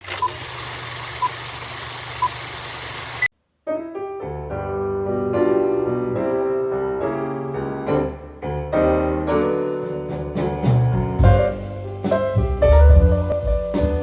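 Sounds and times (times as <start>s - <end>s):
slow piano melody: 3.6s - 14.0s.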